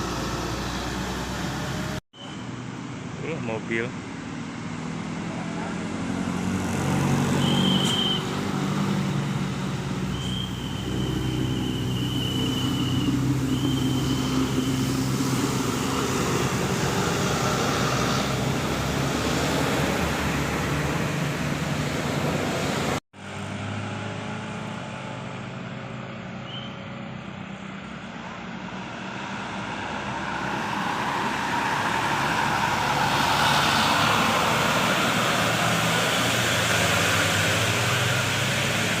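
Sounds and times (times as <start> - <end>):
road traffic noise: 0.0 - 39.0.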